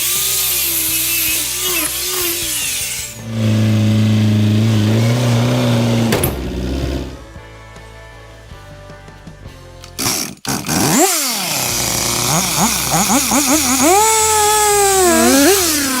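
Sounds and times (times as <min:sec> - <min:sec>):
power tool hissing cutting: 0:00.0 - 0:07.2, 0:10.0 - 0:16.0
motor hum: 0:03.1 - 0:07.3, 0:11.6 - 0:16.0.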